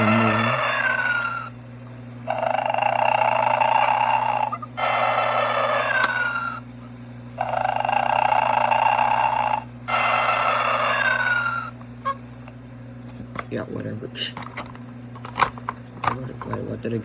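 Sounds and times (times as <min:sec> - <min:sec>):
toy snoring sound: 0:00.0 - 0:01.6, 0:02.3 - 0:06.7, 0:07.4 - 0:12.2
faint low hum: 0:00.0 - 0:17.0.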